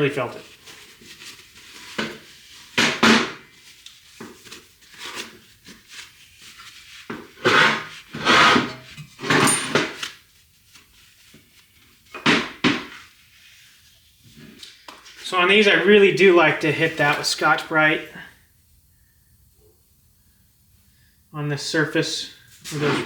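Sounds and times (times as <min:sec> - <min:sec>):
metal parts scraping and knocking: 0:07.5 - 0:10.0.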